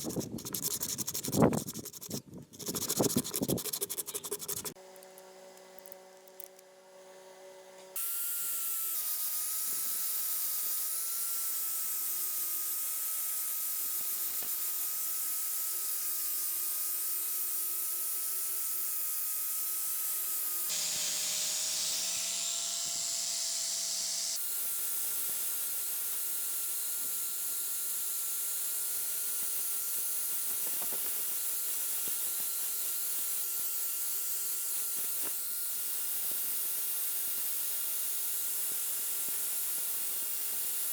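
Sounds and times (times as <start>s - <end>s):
power tool grinding metal: 20.1s - 28.2s.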